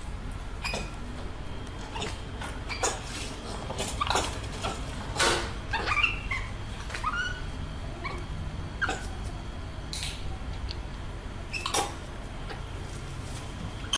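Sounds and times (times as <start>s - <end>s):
animal squeaky cries: 5.7s - 9.1s.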